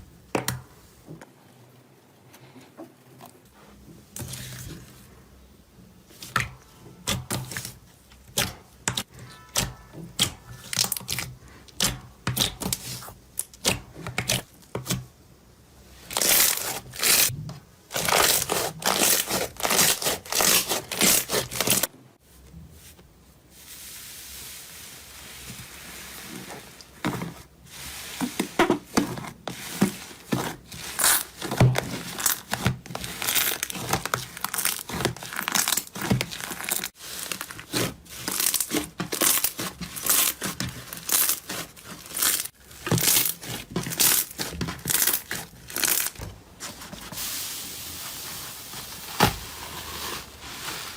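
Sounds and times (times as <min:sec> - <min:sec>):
soft steady hissing: 0:22.2 - 0:28.6, 0:47.0 - 0:50.9
slime crackling and popping: 0:31.0 - 0:46.2.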